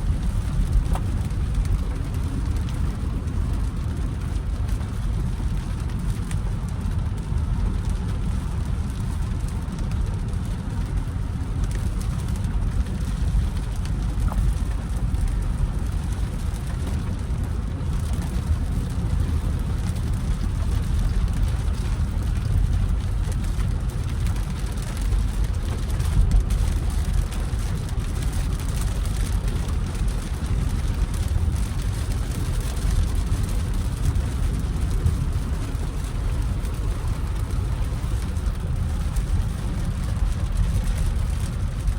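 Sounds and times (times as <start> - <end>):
engine and road rumble: 0.0 - 41.9
rain: 0.0 - 41.9.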